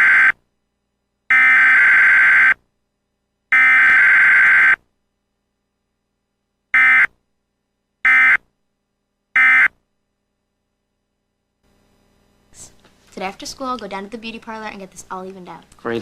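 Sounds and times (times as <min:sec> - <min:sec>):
electronic alert buzzer beeping: 0:01.3 - 0:02.6, 0:03.5 - 0:04.8, 0:06.8 - 0:07.1, 0:08.1 - 0:08.4, 0:09.4 - 0:09.7.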